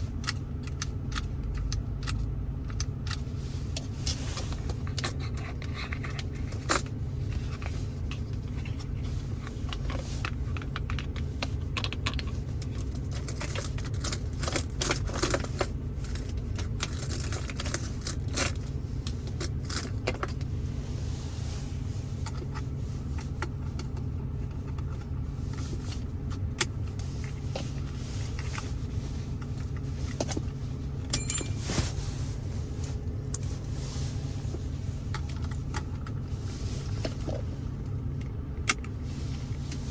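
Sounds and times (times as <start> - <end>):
low hum: 0.0 - 39.9
small jingling rattles: 12.6 - 20.4, 31.0 - 31.7.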